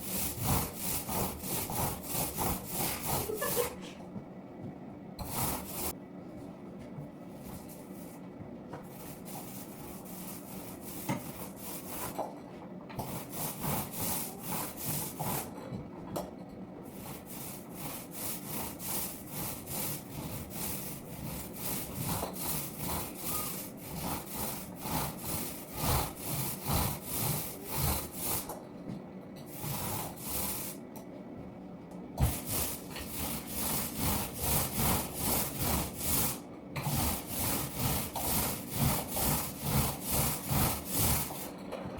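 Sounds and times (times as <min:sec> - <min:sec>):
paint roller swishing on wall: 0:00.0 - 0:03.9, 0:05.2 - 0:06.0, 0:06.8 - 0:12.3, 0:13.0 - 0:15.7, 0:16.8 - 0:28.6, 0:29.5 - 0:30.9, 0:32.2 - 0:41.7.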